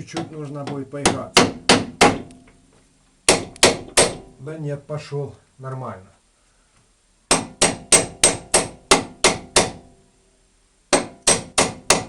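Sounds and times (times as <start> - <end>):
hammer striking steel: 3.3 - 4.3, 7.3 - 9.8, 11.0 - 12.0.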